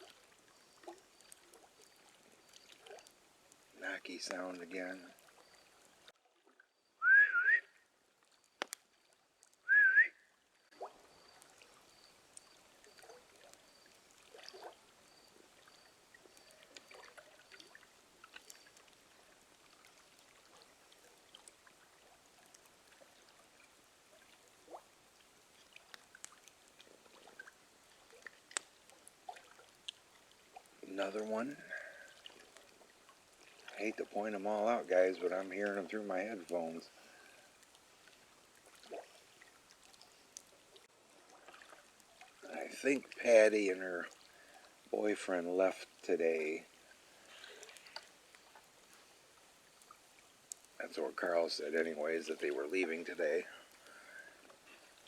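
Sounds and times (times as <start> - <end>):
faint water trickle: 0.0 - 55.0
loud rising whistles: 7.0 - 7.7, 9.7 - 10.1.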